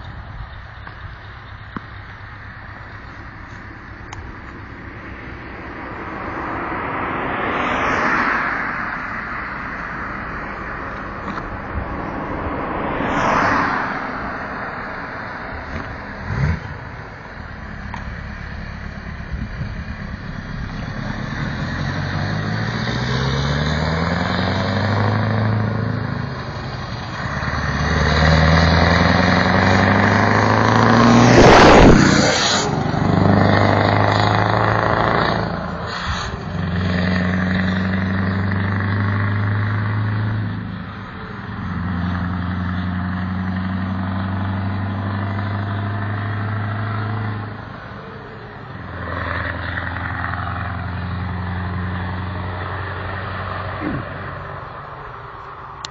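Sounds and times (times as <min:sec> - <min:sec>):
diesel truck accelerating: 0:00.0 - 0:55.9
loud rush of noise: 0:28.1 - 0:37.8.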